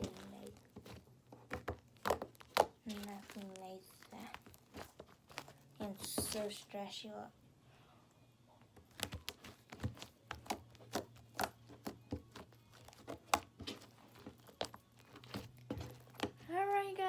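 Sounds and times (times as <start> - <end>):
slime clicking and popping: 8.8 - 16.4.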